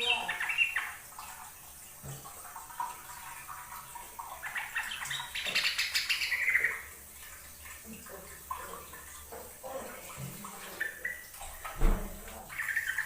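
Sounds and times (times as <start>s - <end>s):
bulbul singing: 0.0s - 1.0s.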